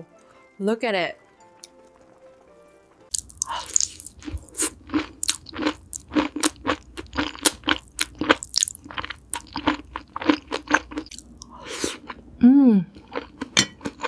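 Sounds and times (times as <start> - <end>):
person chewing crisp food: 3.1 - 14.0.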